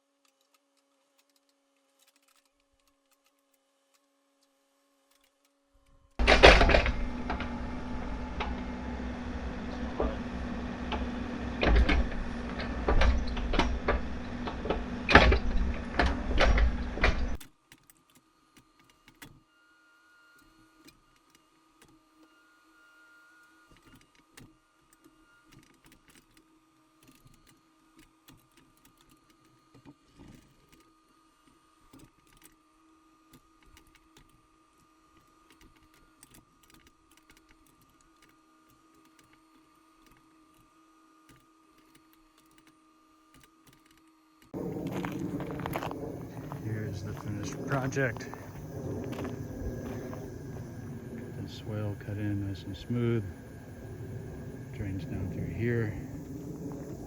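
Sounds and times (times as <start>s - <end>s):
faint steady hum: 5.8s - 17.4s, 37.0s - 57.0s
loud mechanical rumble: 6.2s - 17.4s, 44.6s - 57.0s.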